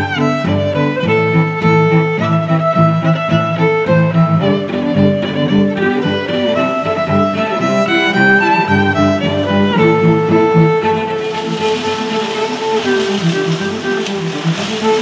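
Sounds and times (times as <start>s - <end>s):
violin melody over strings: 0.0s - 15.0s.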